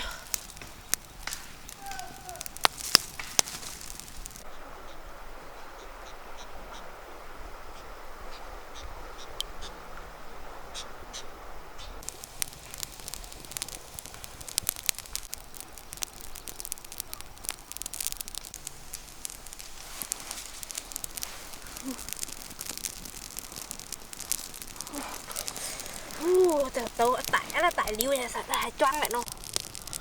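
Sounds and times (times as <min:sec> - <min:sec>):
sharp pops and snaps: 0:00.0 - 0:04.5, 0:12.0 - 0:30.0
wood fire crackling: 0:00.0 - 0:30.0.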